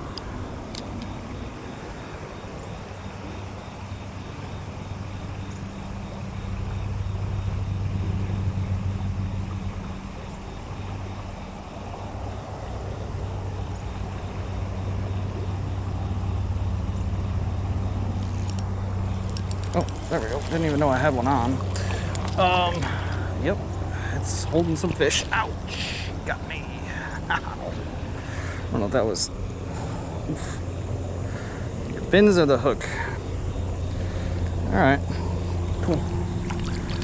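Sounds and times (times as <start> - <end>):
low engine hum: 0.0 - 37.0
water flowing over riffle: 19.2 - 23.4, 35.8 - 37.0.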